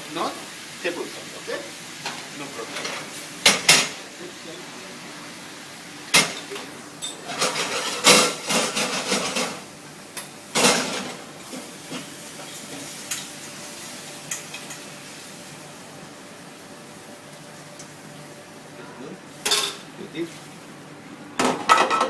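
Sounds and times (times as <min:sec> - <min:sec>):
utensils scraping a pan: 0:07.3 - 0:09.6.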